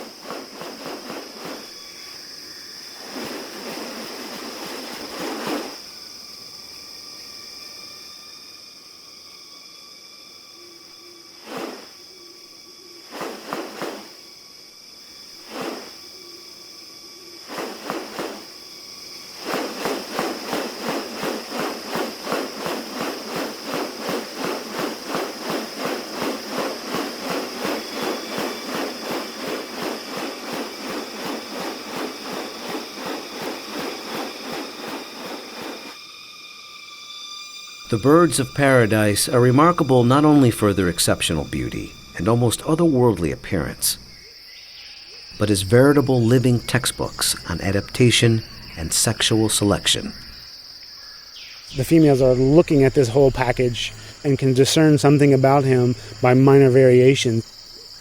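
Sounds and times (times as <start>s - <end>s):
high insect whine: 0.0s - 58.0s
fast rasping pulses: 19.3s - 36.0s.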